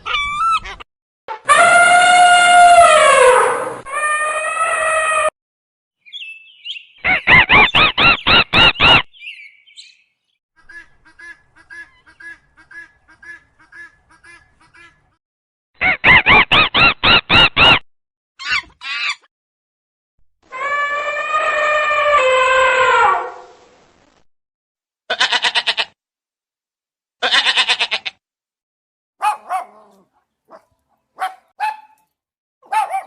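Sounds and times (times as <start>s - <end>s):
rapid repeated bird calls: 6.1s - 15.1s
long drawn-out bleat: 25.1s - 26.0s, 27.2s - 28.2s.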